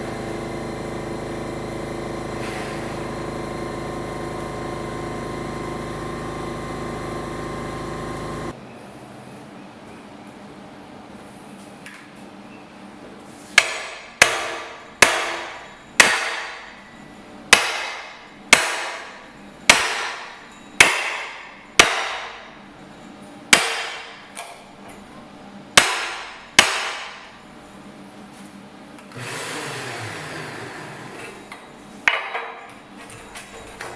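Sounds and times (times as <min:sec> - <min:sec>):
hammer striking steel: 0:13.6 - 0:16.8, 0:17.5 - 0:22.6, 0:23.5 - 0:24.4, 0:25.8 - 0:27.3.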